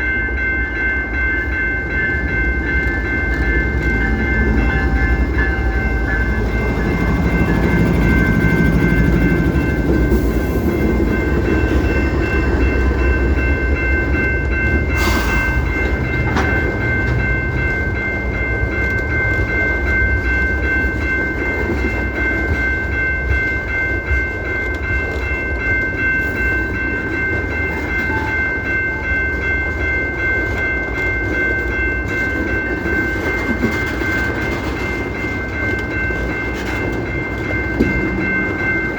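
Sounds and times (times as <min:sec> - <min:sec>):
high-pitched ringing tone: 0:00.0 - 0:24.3, 0:24.9 - 0:30.4
train rumbling by: 0:00.0 - 0:38.9.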